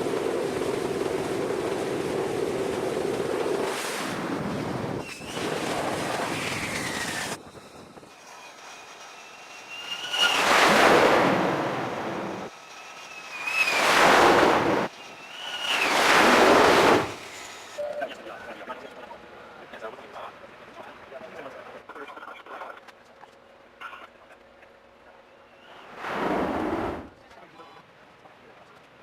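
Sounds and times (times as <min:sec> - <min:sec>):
wind: 0:00.0 - 0:29.0
waves breaking against ship: 0:13.6 - 0:14.9, 0:15.8 - 0:17.2.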